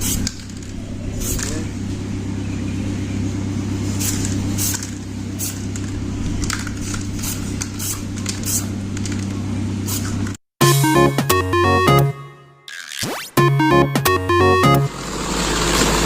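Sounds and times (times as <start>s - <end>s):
hissing spray bursts: 0.0s - 0.4s, 3.9s - 4.8s, 5.4s - 5.7s
low motor hum: 0.0s - 10.4s.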